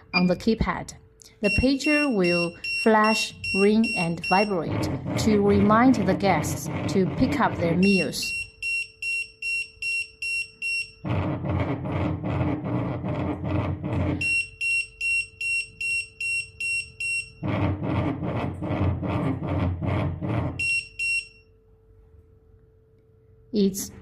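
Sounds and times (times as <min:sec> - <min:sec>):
rapid high electronic beeps: 0:01.5 - 0:05.0, 0:07.4 - 0:11.0.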